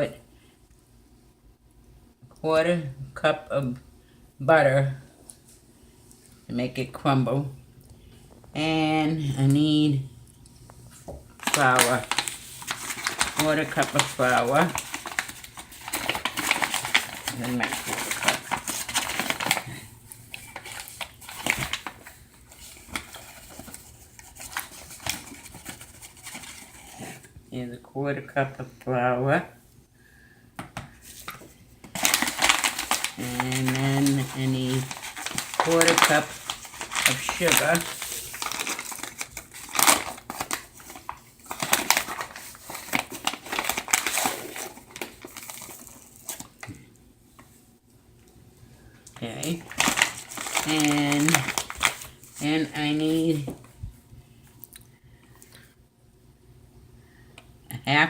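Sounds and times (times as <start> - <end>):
sugar rustling and crunching: 10.4 - 27.4, 30.9 - 46.9, 49.1 - 54.8.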